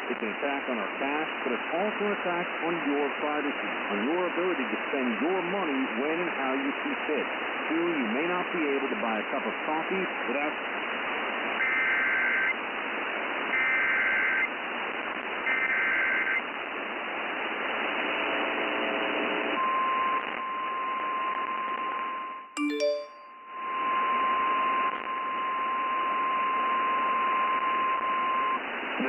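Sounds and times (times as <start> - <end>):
radio static hiss: 0.0 - 13.5.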